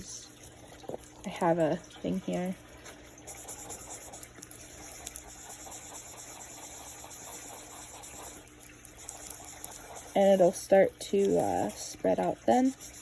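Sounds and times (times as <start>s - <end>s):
pencil rubbing on paper: 3.2s - 10.6s, 11.2s - 13.0s.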